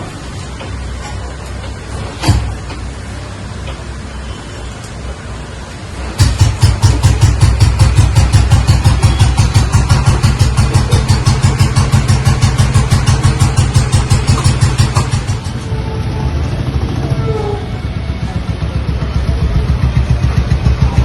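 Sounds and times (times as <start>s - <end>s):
motorcycle engine idling: 6.2s - 15.7s, 16.6s - 21.0s.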